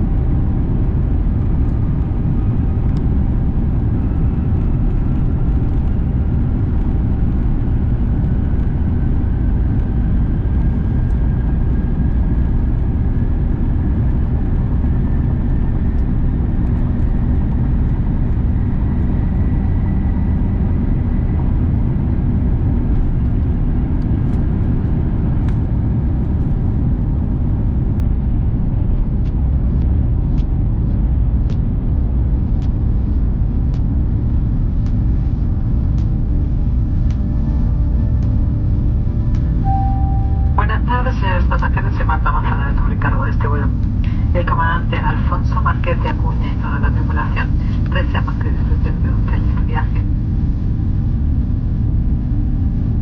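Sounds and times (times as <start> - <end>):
jet engines deep rumble: 0.0 - 53.0
engine whine rising in pitch: 37.3 - 41.1.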